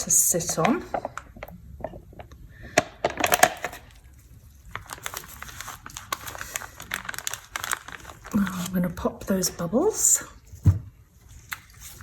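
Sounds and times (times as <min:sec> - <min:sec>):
plastic crinkling: 0:03.1 - 0:09.6.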